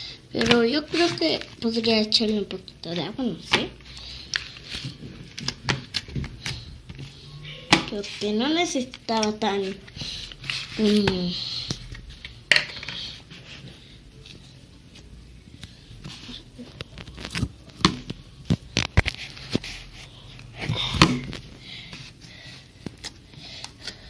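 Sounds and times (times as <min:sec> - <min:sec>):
sticky crackles: 0:00.3 - 0:03.0, 0:16.0 - 0:19.8.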